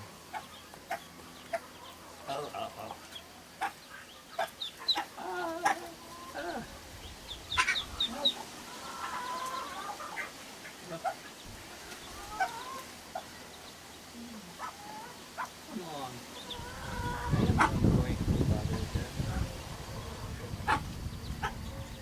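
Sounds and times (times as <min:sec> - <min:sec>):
ducklings peeping: 0:00.0 - 0:22.0
duck alarm calls: 0:07.3 - 0:08.4, 0:16.4 - 0:17.9, 0:20.0 - 0:21.6.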